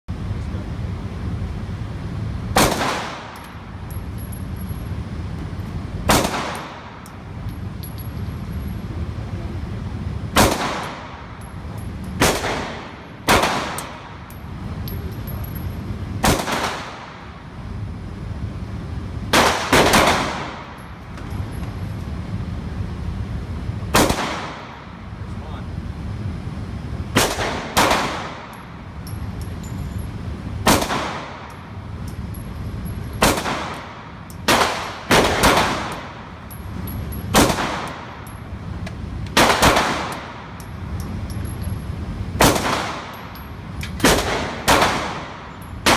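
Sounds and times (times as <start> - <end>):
steady low rumble: 0.1 - 45.9
pistol shots: 2.6 - 3.6, 6.1 - 7.2, 10.4 - 11.4, 12.2 - 14.3, 16.2 - 17.4, 19.3 - 20.8, 23.9 - 24.9, 27.2 - 28.7, 30.6 - 31.6, 33.2 - 36.3, 37.3 - 38.3, 39.4 - 40.6, 42.4 - 43.3, 44.0 - 45.9.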